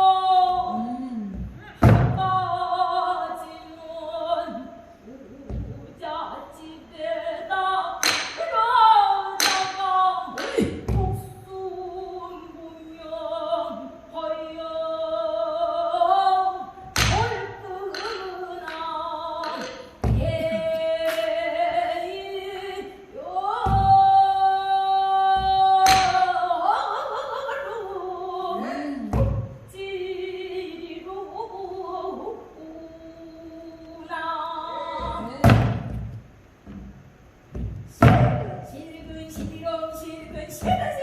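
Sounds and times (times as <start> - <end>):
barrel drum strokes: 34.9 - 41.0.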